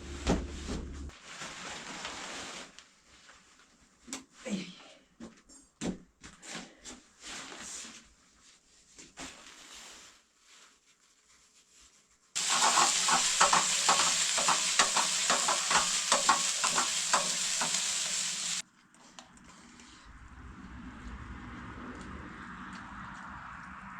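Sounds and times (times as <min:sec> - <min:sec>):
food sizzling in a pan: 0:12.4 - 0:18.6
utensil clicking against pan: 0:12.4 - 0:18.6.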